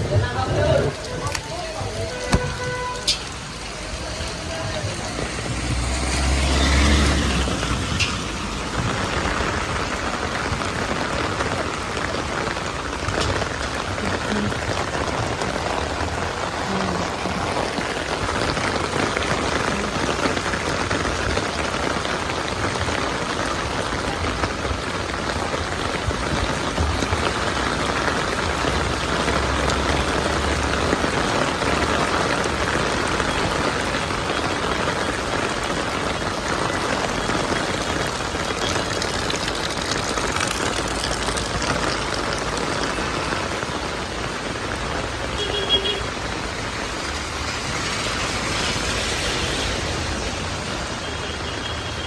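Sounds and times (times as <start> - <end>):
faint low traffic rumble: 0.0 - 52.0
rain pattering on surfaces: 0.0 - 52.0.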